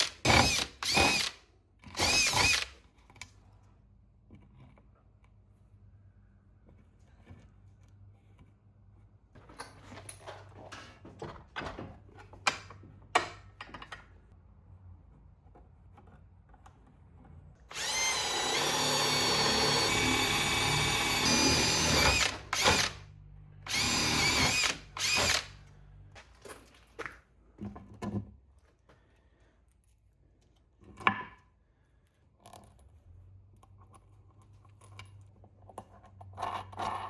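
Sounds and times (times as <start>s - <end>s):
power drill running: 0.0s - 1.4s, 2.0s - 2.7s, 17.7s - 23.0s, 23.6s - 25.6s.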